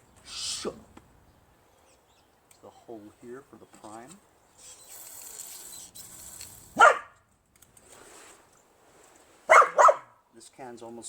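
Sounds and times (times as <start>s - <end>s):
dog barking: 6.8s - 7.1s, 9.5s - 10.1s.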